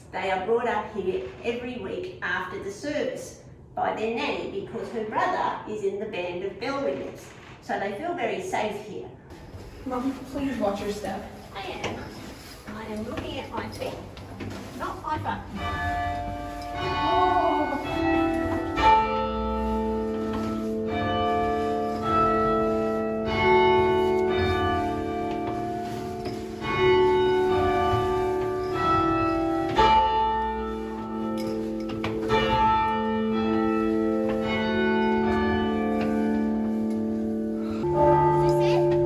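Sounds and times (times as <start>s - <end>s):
church bells ringing: 15.4s - 39.0s.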